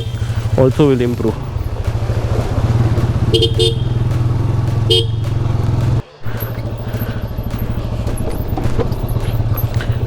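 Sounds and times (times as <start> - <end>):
motorcycle horn tooting: 0.0 - 0.5, 3.1 - 5.5
motorcycle engine running: 0.0 - 10.0.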